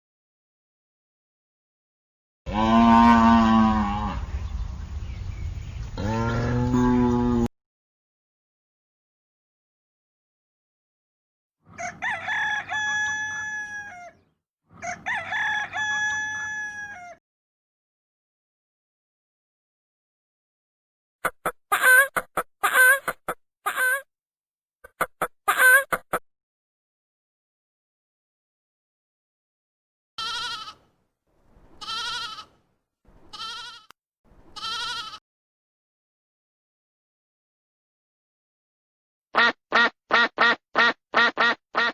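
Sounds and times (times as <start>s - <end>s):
rooster crowing: 11.7s - 17.2s
goat bleating: 30.2s - 30.9s, 31.8s - 32.6s, 33.3s - 33.9s, 34.6s - 35.2s.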